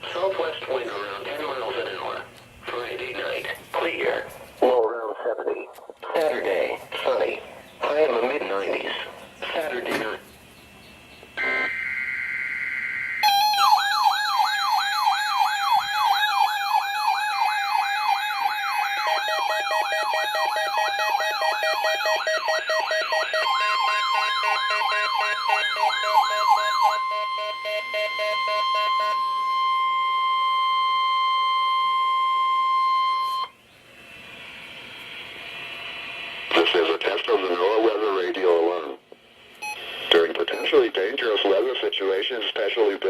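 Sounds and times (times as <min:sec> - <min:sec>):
steady alarm tone: 0:11.4 - 0:33.6, 0:39.6 - 0:41.1
warbling siren alarms: 0:11.4 - 0:33.6.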